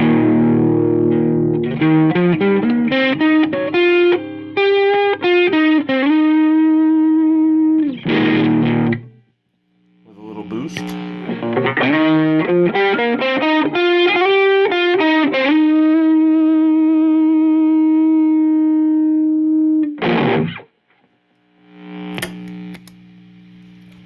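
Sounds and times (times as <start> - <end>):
overdriven electric guitar: 0.0 - 9.2, 10.2 - 20.7
sharp click: 10.7 - 11.5, 22.2 - 23.0.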